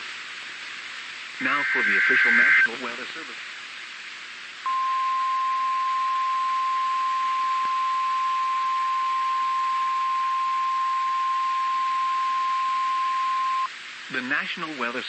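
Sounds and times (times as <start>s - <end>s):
steady hiss: 0.0s - 15.0s
steady warning beep tone: 1.4s - 2.7s, 4.7s - 13.7s.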